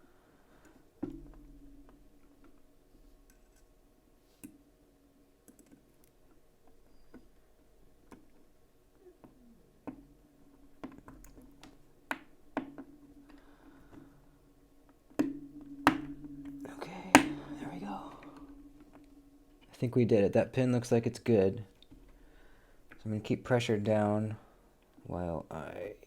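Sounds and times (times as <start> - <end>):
faint low hum: 0.0 - 26.0.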